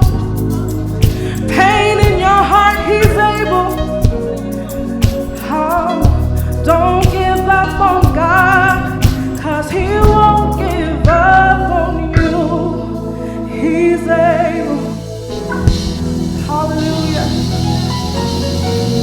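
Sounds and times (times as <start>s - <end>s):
bass line: 0.0s - 19.0s
gospel vocal group singing: 0.0s - 19.0s
drum hits: 15.4s - 16.2s.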